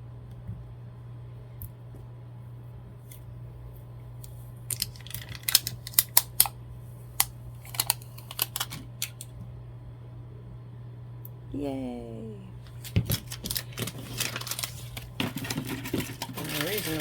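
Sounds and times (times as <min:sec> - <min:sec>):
steady low hum: 0:00.0 - 0:17.0
tape clicks and crackles: 0:04.2 - 0:09.4, 0:12.6 - 0:17.0.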